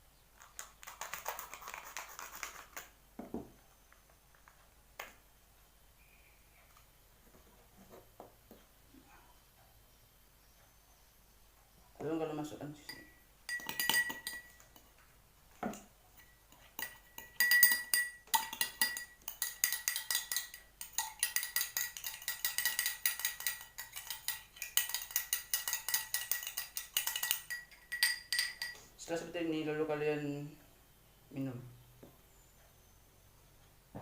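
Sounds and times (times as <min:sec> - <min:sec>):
spoon clinking in glass: 0:12.9 - 0:14.9, 0:15.7 - 0:28.9.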